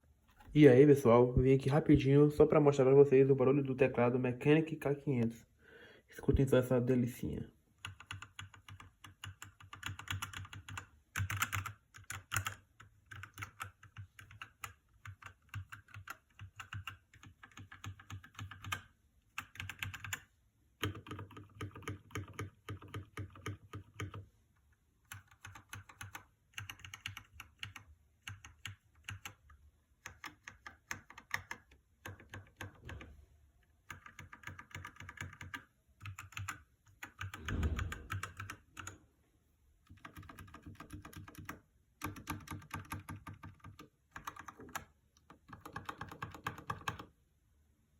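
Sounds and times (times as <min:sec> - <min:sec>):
mechanical keyboard typing: 0:07.8 - 0:24.3, 0:25.1 - 0:33.1, 0:33.8 - 0:39.0, 0:39.9 - 0:47.1.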